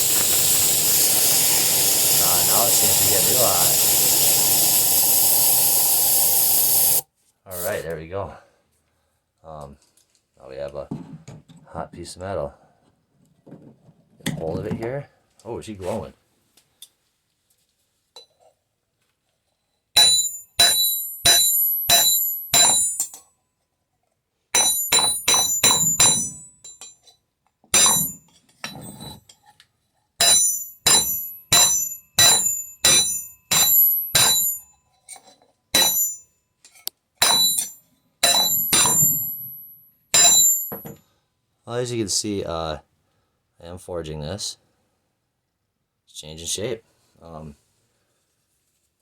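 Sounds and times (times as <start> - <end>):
hammer striking hot metal: 0.0 - 7.0, 20.0 - 23.2, 24.6 - 26.5, 27.8 - 28.2, 30.2 - 34.7, 35.8 - 36.3, 37.2 - 39.5, 40.2 - 40.9.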